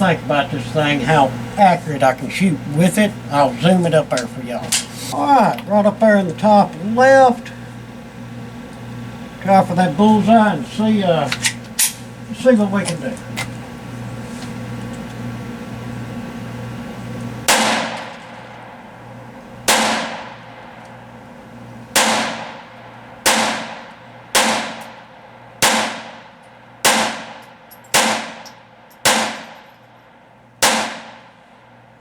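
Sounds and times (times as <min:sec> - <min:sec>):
pistol shots: 0:17.5 - 0:18.5, 0:19.7 - 0:20.4, 0:21.9 - 0:29.7, 0:30.6 - 0:31.3.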